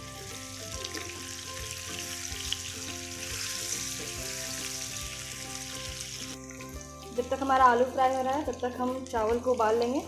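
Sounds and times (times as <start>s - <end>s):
potatoes sizzling in oil: 0.0s - 10.0s
soft background music: 0.0s - 10.0s.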